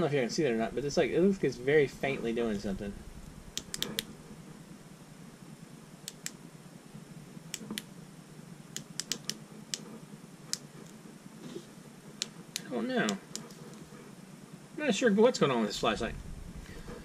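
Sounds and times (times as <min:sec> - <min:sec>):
flashlight switch clicking: 0:03.6 - 0:04.1, 0:06.1 - 0:06.4, 0:08.8 - 0:09.8.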